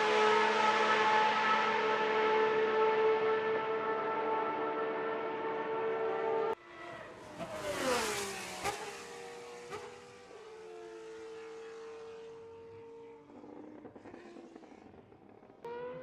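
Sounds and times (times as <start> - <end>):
race car passing at speed: 0.0 - 13.2.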